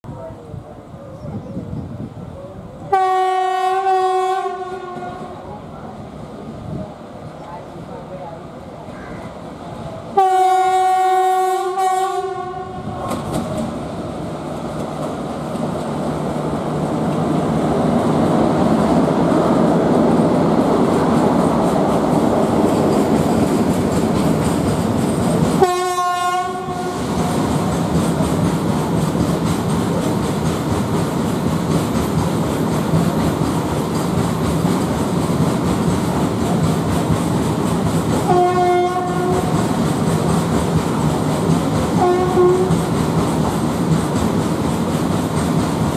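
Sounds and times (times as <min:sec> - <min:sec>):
train wagons rumbling on track: 0:00.0 - 0:45.9
train horn blasts: 0:02.9 - 0:05.4, 0:10.2 - 0:12.9, 0:25.6 - 0:27.1, 0:38.3 - 0:39.5, 0:42.0 - 0:42.8.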